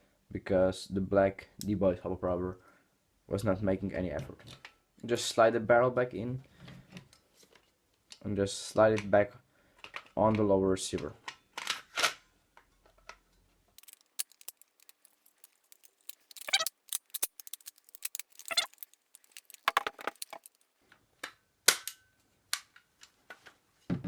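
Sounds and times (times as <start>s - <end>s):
airsoft rifle parts clicking and clacking: 13.8s - 20.6s.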